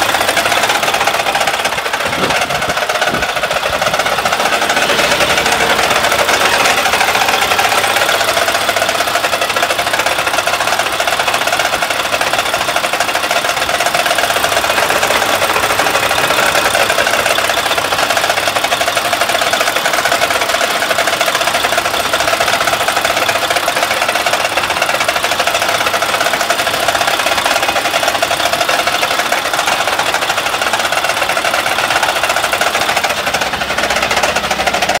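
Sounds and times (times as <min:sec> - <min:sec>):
diesel engine knocking clatter: 0:00.0 - 0:35.0.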